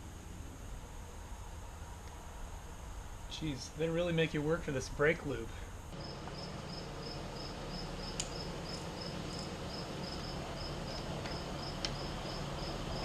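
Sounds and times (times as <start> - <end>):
low steady hum: 0.0 - 13.0
cricket chirping: 5.8 - 13.0.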